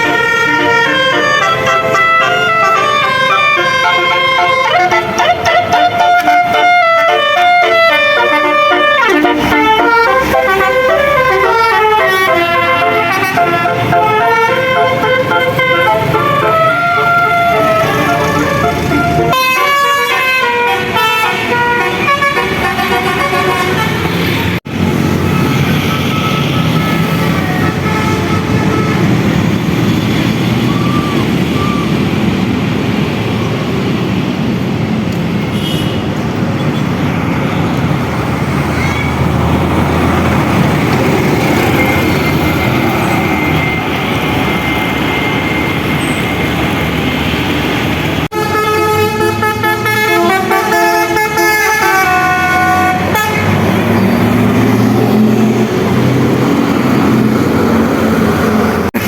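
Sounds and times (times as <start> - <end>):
musical air horn tune: 0.0 - 24.6, 48.3 - 53.6
loud traffic noise: 0.0 - 59.0.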